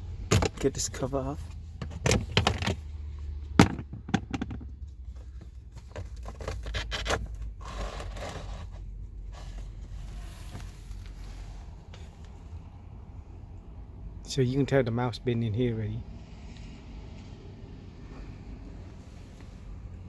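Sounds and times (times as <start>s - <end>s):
filter scraping and rustling: 3.6s - 4.7s.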